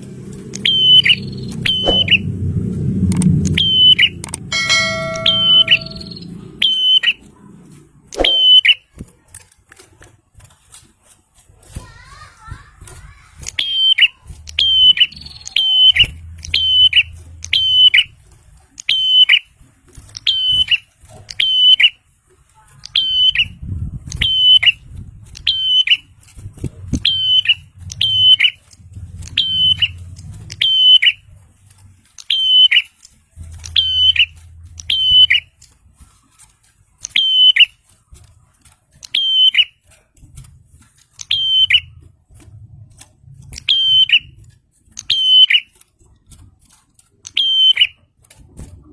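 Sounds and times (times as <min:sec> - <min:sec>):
bird calling sharp high notes: 0:00.6 - 0:02.3, 0:03.5 - 0:07.2, 0:08.2 - 0:08.9, 0:29.2 - 0:31.2, 0:33.6 - 0:35.6, 0:43.6 - 0:44.4, 0:45.0 - 0:45.7.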